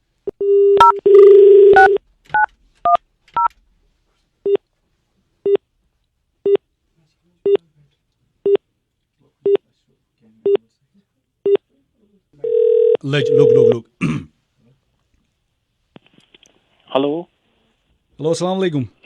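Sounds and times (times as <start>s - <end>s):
keypad dialling tones: 0.4s - 2.5s, 12.5s - 13.8s
telephone dial tone: 0.4s - 2.5s, 12.4s - 13.7s.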